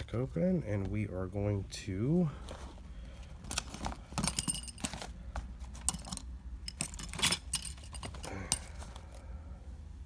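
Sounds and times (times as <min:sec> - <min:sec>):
small metal tools clinking: 0:03.5 - 0:05.1, 0:05.7 - 0:09.1.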